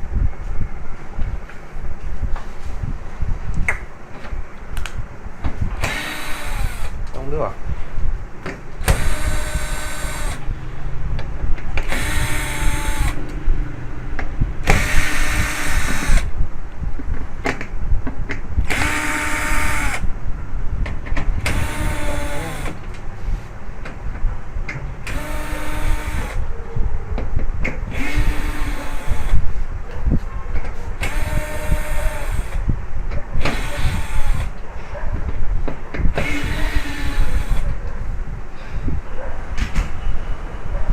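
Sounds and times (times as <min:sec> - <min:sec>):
electric screwdriver whirring: 0:05.8 - 0:07.0, 0:08.8 - 0:10.4, 0:11.8 - 0:13.2, 0:14.7 - 0:16.3, 0:18.7 - 0:20.0, 0:21.4 - 0:22.8, 0:25.1 - 0:26.4, 0:27.9 - 0:29.4, 0:31.0 - 0:32.6, 0:33.4 - 0:34.5, 0:36.2 - 0:37.6.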